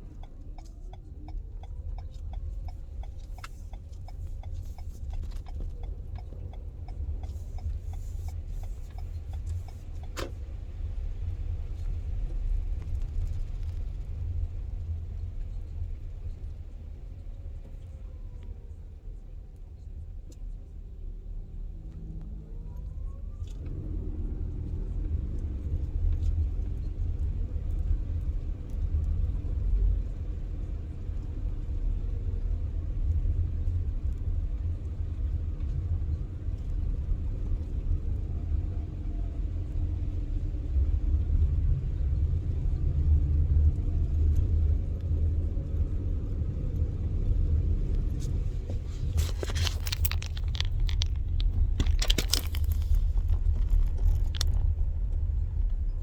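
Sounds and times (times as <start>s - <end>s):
steady low rumble: 0.0s - 23.3s, 24.0s - 56.0s
rattling and clattering: 48.1s - 54.8s.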